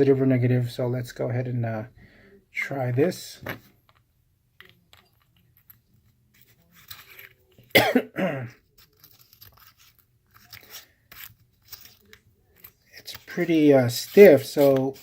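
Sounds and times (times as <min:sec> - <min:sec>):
person coughing: 0:07.7 - 0:08.6.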